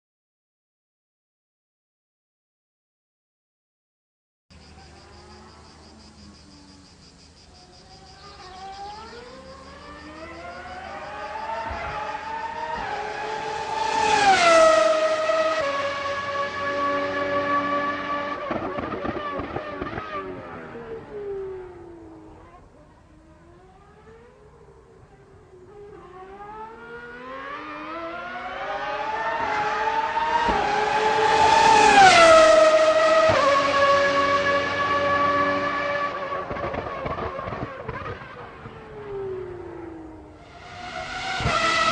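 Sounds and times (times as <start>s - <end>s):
racing car engine accelerating: 7.9s - 41.9s.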